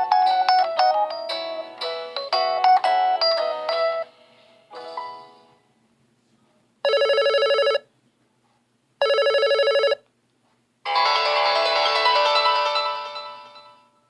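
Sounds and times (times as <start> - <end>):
melodic ringtone: 0.0 - 5.4, 6.9 - 7.8, 9.0 - 10.0, 10.9 - 14.0
warbling electronic phone ring: 6.9 - 7.8, 9.0 - 10.0.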